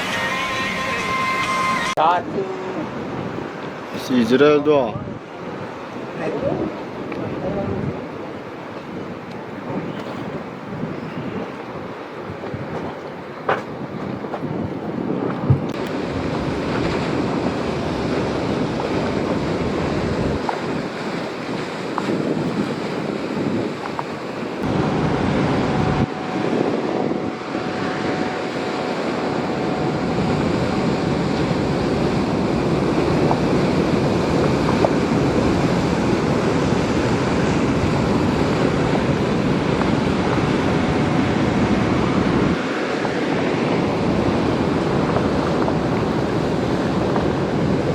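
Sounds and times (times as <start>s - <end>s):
surf rushing: 0.0s - 47.9s
wind buffeting microphone: 1.8s - 47.9s.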